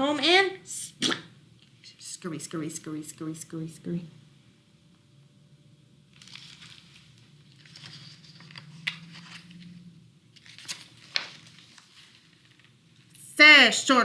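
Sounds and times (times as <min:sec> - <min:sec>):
paper pages rustling: 0:06.1 - 0:13.1.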